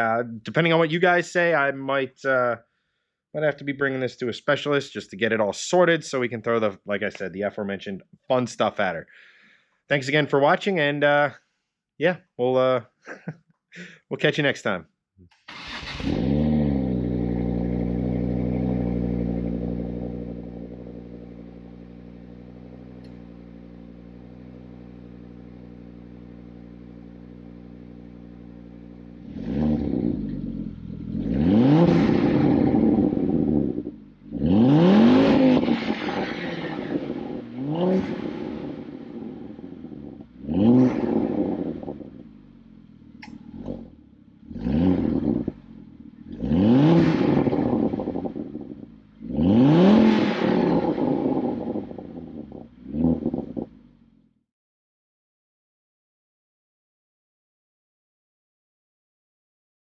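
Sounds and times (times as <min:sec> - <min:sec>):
car engine idling and revving: 0:15.5 - 0:54.3.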